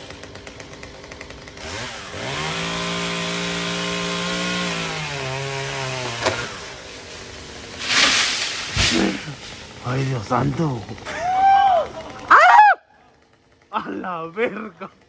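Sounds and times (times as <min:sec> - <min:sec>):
chainsaw revving: 0:00.0 - 0:15.0
sharp crack of wood: 0:05.9 - 0:10.1.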